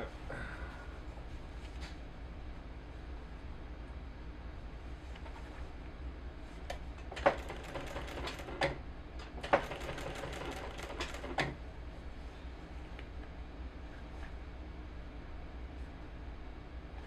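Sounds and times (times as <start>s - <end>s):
sewing machine stitching: 7.1s - 11.6s.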